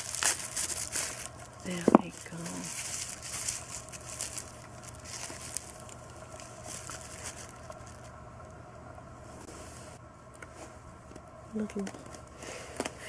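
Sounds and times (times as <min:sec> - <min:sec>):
cardboard rustling and scraping: 0:00.0 - 0:08.1.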